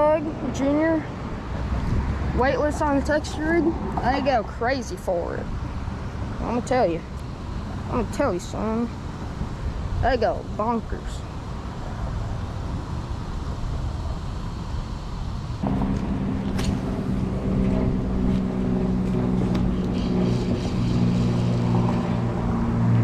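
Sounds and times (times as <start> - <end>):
low outdoor rumble: 0.0 - 23.0
low-pitched motor hum: 15.6 - 23.0
sharp click: 16.0 - 16.8.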